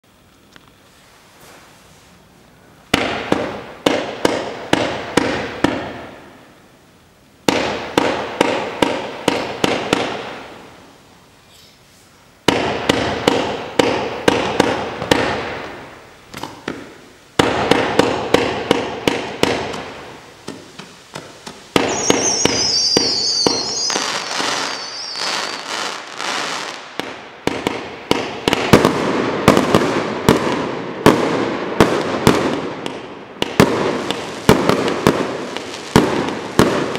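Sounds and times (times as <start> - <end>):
firework cake firing rapid shots: 7.5 - 10.3, 12.5 - 15.6, 17.4 - 19.8, 27.5 - 36.9
high whistling: 21.8 - 26.2.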